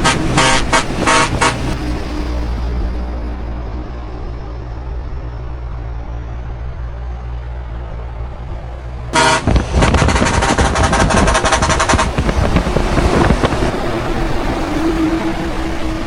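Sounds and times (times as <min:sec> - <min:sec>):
truck air horn blast: 0:00.0 - 0:02.1, 0:09.1 - 0:13.5
loud rushing noise: 0:00.0 - 0:04.1, 0:09.1 - 0:16.0
truck engine rumbling: 0:00.0 - 0:16.0.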